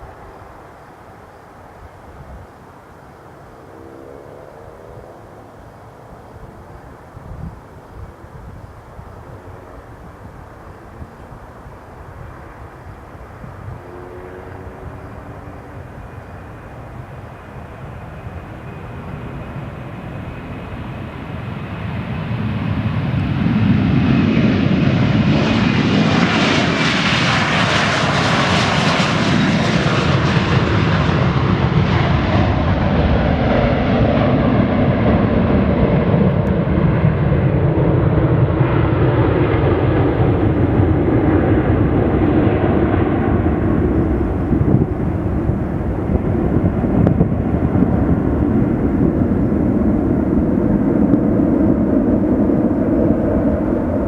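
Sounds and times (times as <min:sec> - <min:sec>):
jet engines roaring past: 0:00.0 - 0:54.0.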